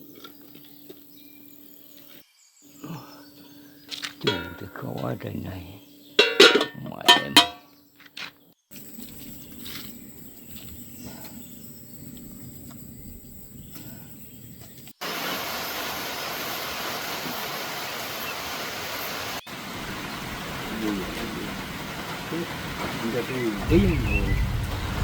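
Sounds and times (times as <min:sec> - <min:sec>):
heavy rain falling: 0:15.0 - 0:25.0
low outdoor rumble: 0:19.5 - 0:25.0.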